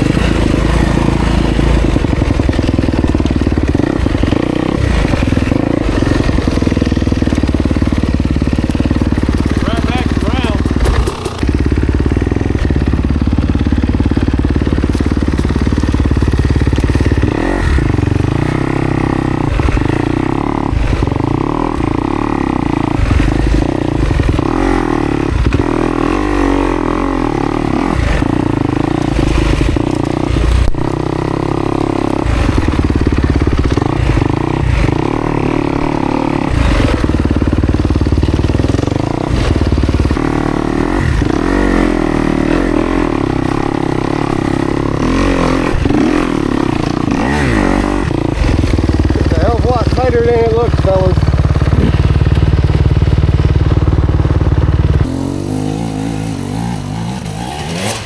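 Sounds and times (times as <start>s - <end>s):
dirt bike engine revving: 0.0s - 58.0s.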